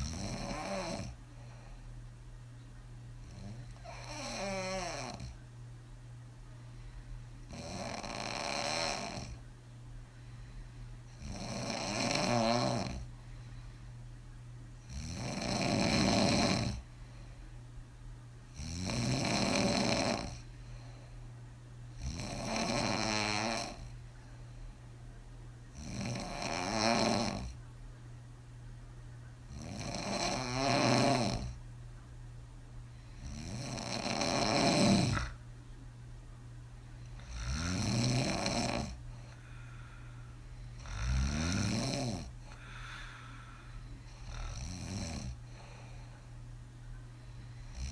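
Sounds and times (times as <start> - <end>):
woman snoring with lips flapping: 0.0 - 1.2, 3.2 - 5.4, 7.5 - 9.4, 11.1 - 13.1, 14.8 - 16.9, 18.5 - 20.5, 21.9 - 23.9, 25.7 - 27.6, 29.5 - 31.6, 33.1 - 35.4, 37.1 - 39.0, 40.7 - 43.4, 44.1 - 45.4, 47.6 - 47.9.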